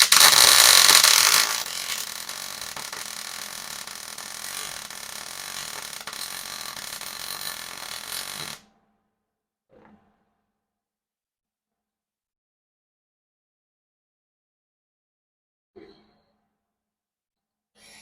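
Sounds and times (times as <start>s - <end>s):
arc welding crackling hiss: 0.0s - 8.6s.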